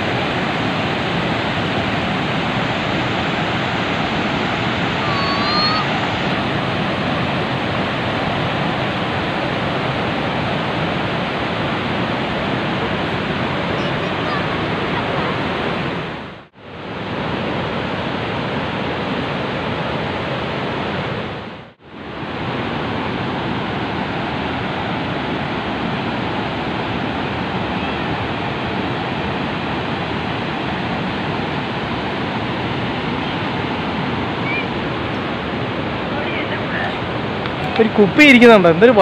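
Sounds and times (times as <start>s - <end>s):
waterfall rushing: 0.0s - 39.0s.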